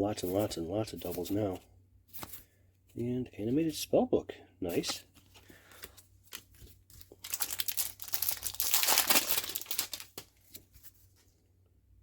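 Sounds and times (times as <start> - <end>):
foil wrapper crinkling and tearing: 6.3 - 10.5.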